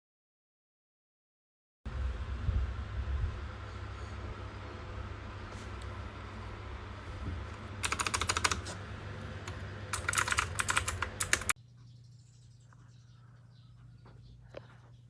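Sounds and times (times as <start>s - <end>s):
steady low hum: 1.9s - 15.0s
keyboard typing: 7.8s - 8.8s, 9.4s - 11.6s.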